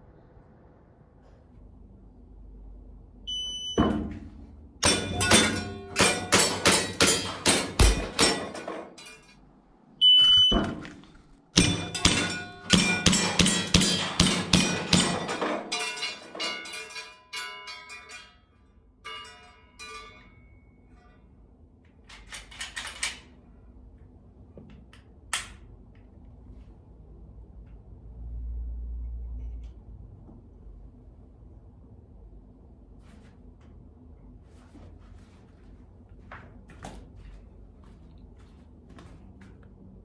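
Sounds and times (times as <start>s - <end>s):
shot timer beep: 3.3s - 3.9s, 10.0s - 10.7s
bbs ringing on steel targets: 4.8s - 9.3s, 11.6s - 18.4s, 19.0s - 21.0s.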